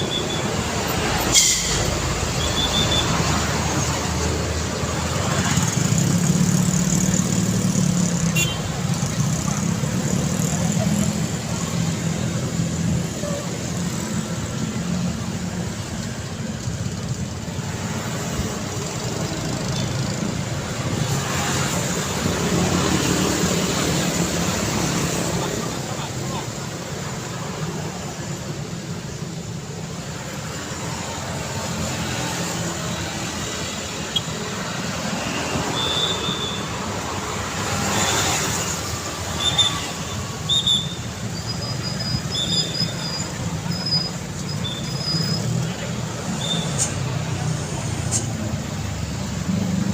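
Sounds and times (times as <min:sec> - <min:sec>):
road traffic: 0:00.0 - 0:49.9
short high-pitched squeals: 0:01.3 - 0:03.2, 0:39.3 - 0:45.6.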